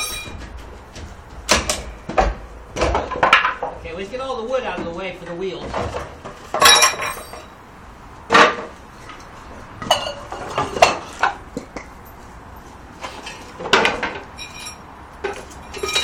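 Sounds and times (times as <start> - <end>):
short ringing clinks: 0.0 - 0.4, 6.6 - 7.5, 14.4 - 14.8.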